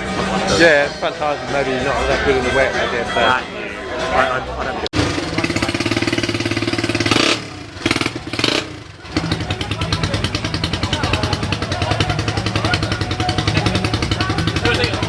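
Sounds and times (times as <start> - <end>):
motorcycle engine running: 5.0 - 15.0.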